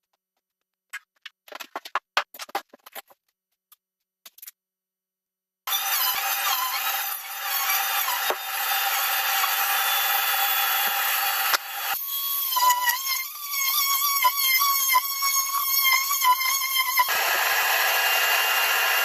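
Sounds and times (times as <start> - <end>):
power tool cutting ceiling: 5.7 - 19.0.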